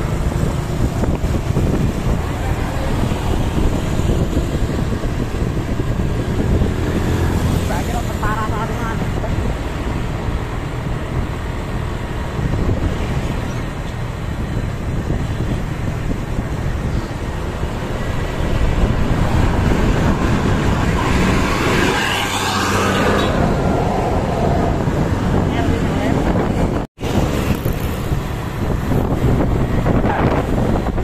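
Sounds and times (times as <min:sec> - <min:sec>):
roadside traffic noise: 0:00.0 - 0:31.0
wind on microphone: 0:00.0 - 0:31.0
vehicle passing close: 0:16.7 - 0:31.0.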